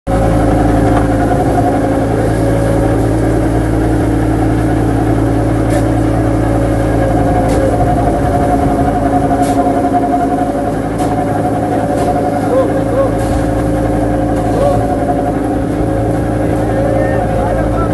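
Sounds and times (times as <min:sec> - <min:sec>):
boat engine running: 0:00.1 - 0:17.9.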